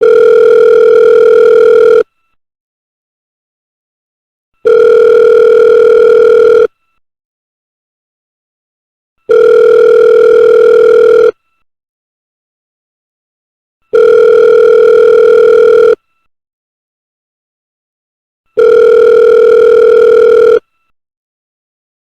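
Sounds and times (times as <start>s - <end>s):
electronic telephone ringing: 0.0s - 2.1s, 4.6s - 6.7s, 9.3s - 11.4s, 13.9s - 16.0s, 18.6s - 20.6s.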